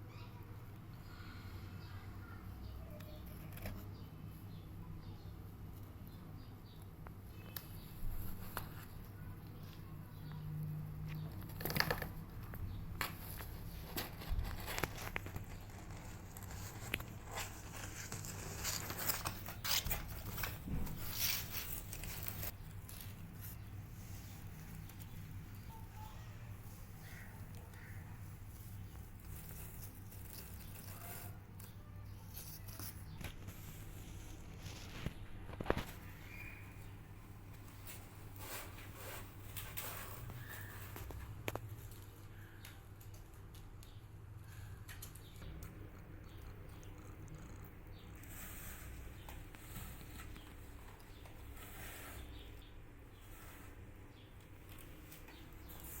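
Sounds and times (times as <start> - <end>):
scratching and rustling: 7.5 - 9.8, 11.0 - 42.2, 44.9 - 56.0
steady low hum: 12.2 - 56.0.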